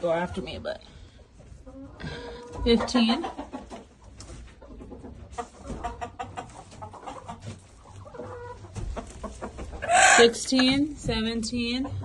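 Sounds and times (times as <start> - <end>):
chickens clucking: 0.0 - 12.0.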